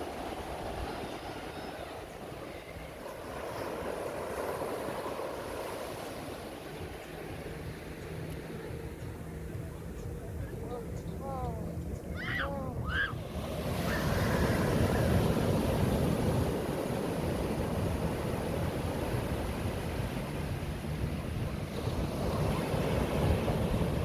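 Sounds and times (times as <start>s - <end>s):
sea surf breaking: 0.0s - 8.6s, 12.2s - 24.0s
wind buffeting microphone: 0.0s - 24.0s.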